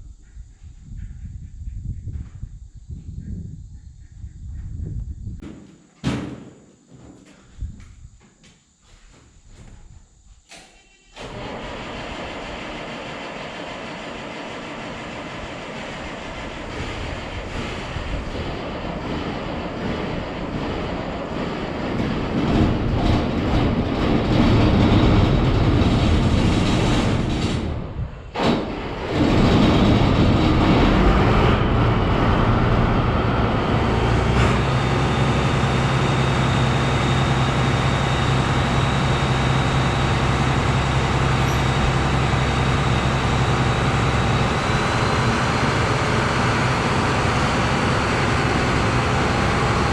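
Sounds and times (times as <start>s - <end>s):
heavy diesel engine running: 11.2s - 49.9s.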